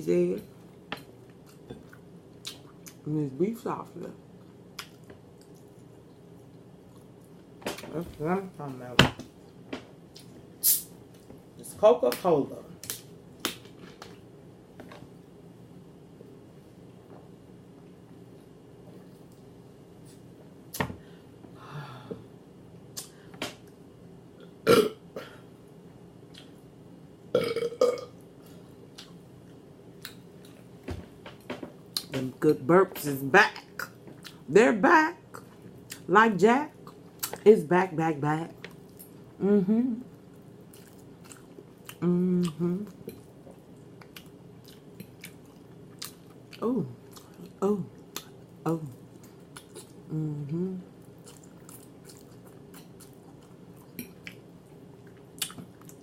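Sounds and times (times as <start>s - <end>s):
woman burping: 24.6s - 25.4s, 27.3s - 28.1s
mouth chewing: 40.7s - 43.3s, 43.9s - 48.4s, 51.1s - 56.0s.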